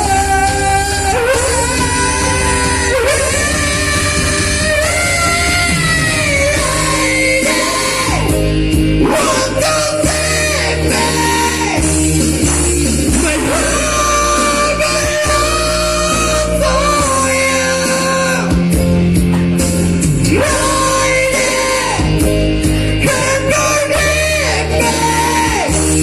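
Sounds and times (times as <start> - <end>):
rock song with singer and band: 0.0 - 26.0.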